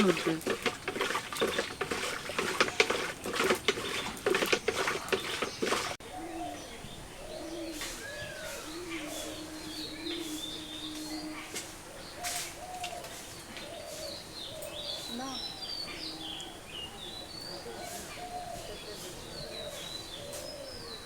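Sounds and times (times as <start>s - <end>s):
churn splashing in bucket: 0.0s - 6.0s
doves cooing: 0.0s - 21.0s
small birds chirping: 0.0s - 21.0s.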